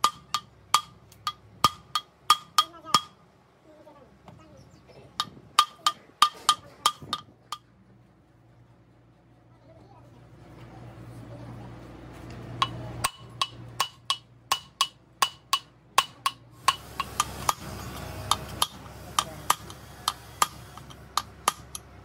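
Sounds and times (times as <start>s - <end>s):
hammer striking metal: 0.0s - 3.2s, 5.2s - 7.7s, 12.6s - 22.0s.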